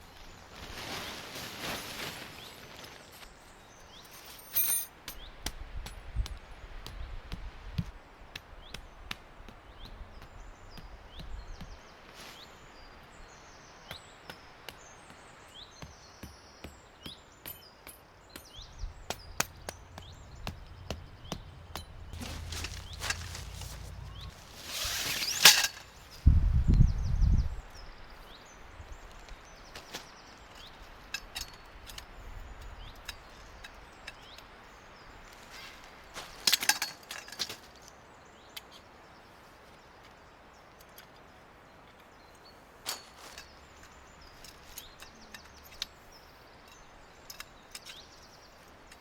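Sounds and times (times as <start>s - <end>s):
small birds chirping: 8.3s - 49.0s
low thud: 18.9s - 24.6s
loud rustling: 19.1s - 26.3s.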